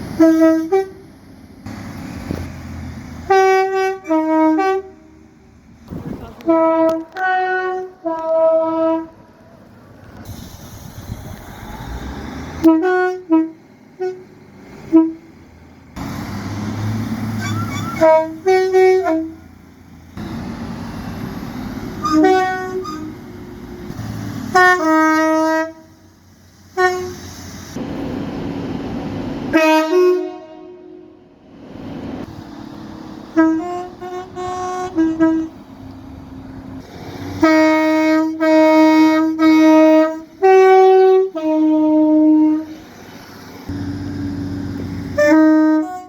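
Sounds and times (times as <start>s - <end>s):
rumble of trains running: 0.0s - 46.0s
train horn blasts: 0.2s - 1.0s, 3.2s - 5.2s, 6.4s - 9.2s, 12.6s - 15.3s, 17.4s - 19.5s, 22.0s - 23.2s, 24.5s - 26.0s, 26.8s - 27.2s, 29.5s - 31.2s, 33.3s - 35.6s, 37.4s - 42.8s, 45.1s - 46.0s.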